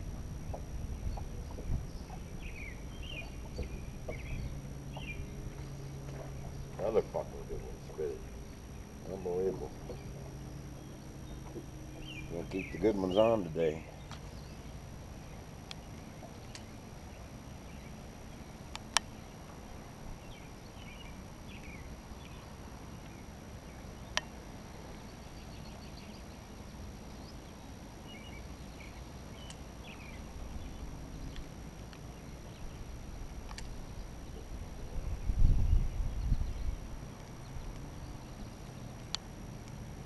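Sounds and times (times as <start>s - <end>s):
steady low rumble: 0.0s - 40.0s
faint bird chirps: 0.5s - 19.4s.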